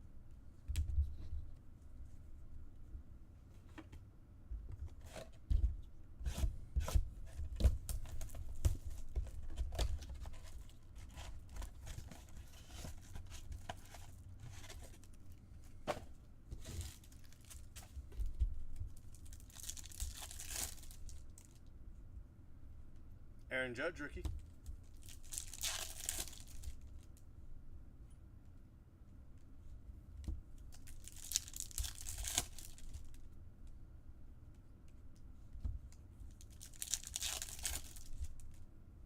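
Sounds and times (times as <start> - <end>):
card packs ripping and rustling: 19.2 - 21.0, 25.0 - 26.8, 30.8 - 33.0, 36.5 - 38.2.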